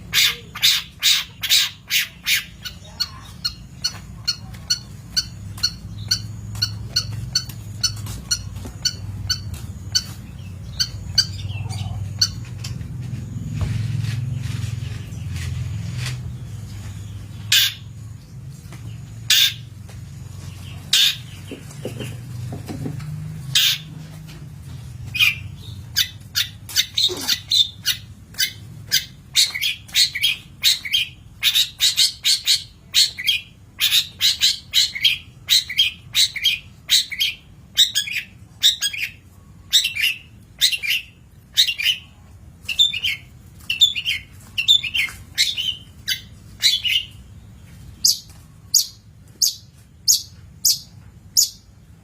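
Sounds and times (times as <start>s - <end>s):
bird calling harshly: 0.0s - 12.4s
bird chattering calls: 0.0s - 12.8s, 17.3s - 17.9s, 19.3s - 19.7s, 20.9s - 22.8s, 23.5s - 23.9s.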